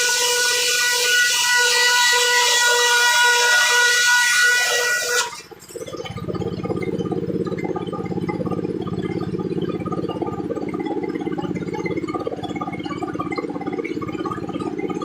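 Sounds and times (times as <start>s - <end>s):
circular saw cutting wood: 0.0s - 5.6s
machine chugging: 0.0s - 15.0s.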